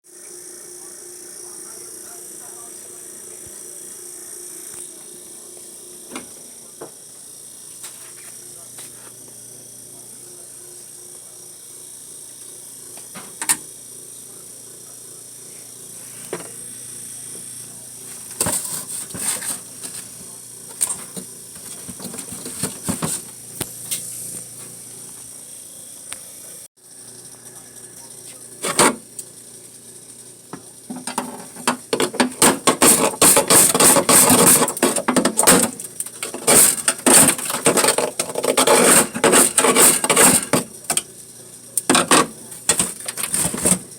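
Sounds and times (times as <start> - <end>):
ice scraping and clattering: 18.3 - 20.1, 20.8 - 23.3, 31.0 - 40.7, 41.9 - 43.8.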